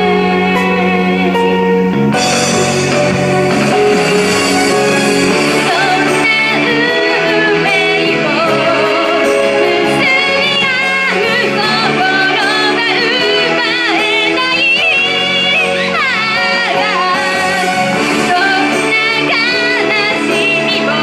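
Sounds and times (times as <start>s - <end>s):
woman singing: 0.0s - 1.5s, 5.3s - 21.0s
instrumental backing music: 0.0s - 21.0s.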